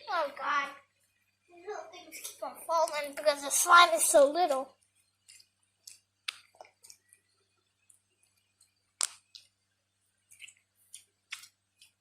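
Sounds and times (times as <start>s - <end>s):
slime squelching and clicking: 5.2s - 9.6s, 10.2s - 12.0s.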